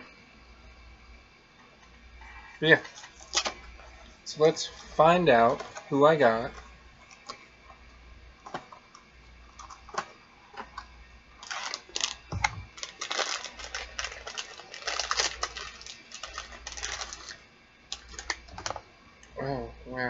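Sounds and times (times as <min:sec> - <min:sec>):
packaging rustling: 0:11.4 - 0:18.8.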